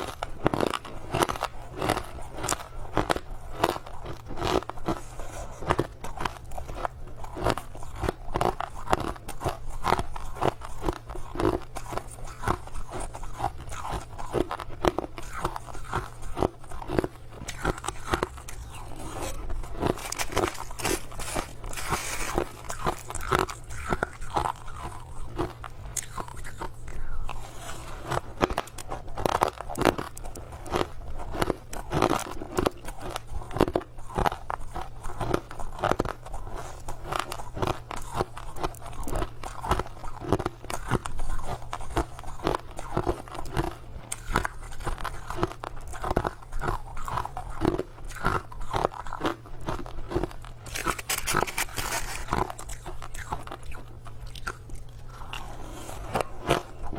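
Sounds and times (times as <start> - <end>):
crushed ice crunching: 15.8 - 26.3, 50.6 - 53.4.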